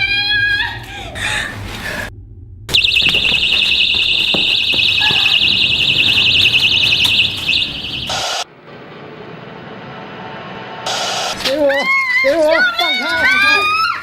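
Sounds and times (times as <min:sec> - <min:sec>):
warbling personal alarm shriek: 0:02.7 - 0:08.4.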